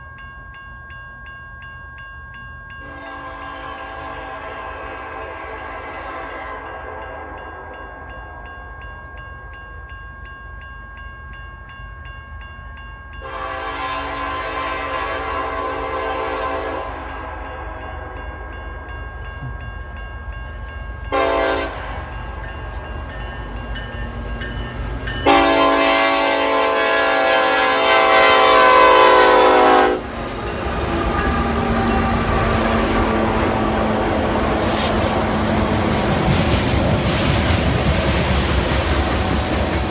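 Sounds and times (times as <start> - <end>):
locomotive air horn blasts: 2.8 - 7.8, 13.2 - 18.2, 21.1 - 21.8, 25.2 - 30.2, 31.0 - 35.3.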